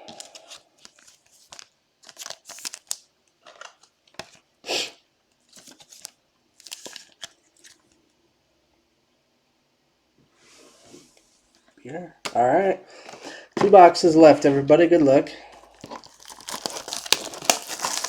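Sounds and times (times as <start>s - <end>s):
plastic packaging crinkling: 0.0s - 4.4s, 5.4s - 8.0s, 15.4s - 18.0s.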